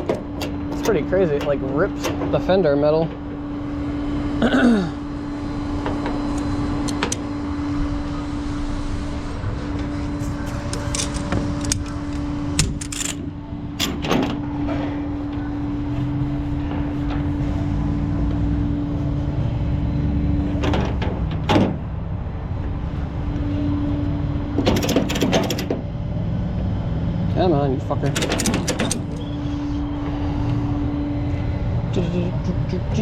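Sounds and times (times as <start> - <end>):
strap hooks and ratchets clanking: 0.0 - 2.5, 5.8 - 7.2, 10.2 - 14.4, 24.6 - 25.8, 28.0 - 29.3
truck engine humming: 0.0 - 33.0.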